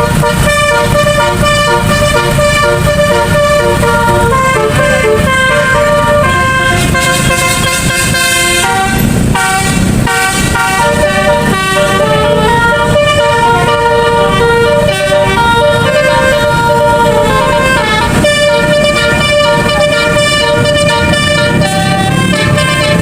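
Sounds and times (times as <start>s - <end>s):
multi-tone air horn tune: 0.0s - 23.0s.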